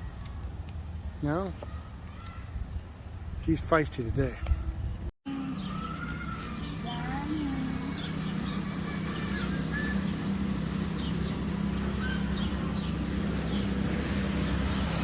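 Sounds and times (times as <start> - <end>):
low mechanical hum: 4.8 - 15.0
bird chirps: 5.3 - 15.0.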